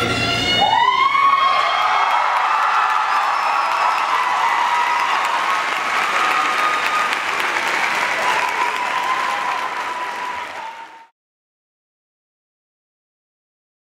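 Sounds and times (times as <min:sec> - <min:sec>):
audience applauding and cheering: 0:00.6 - 0:11.1.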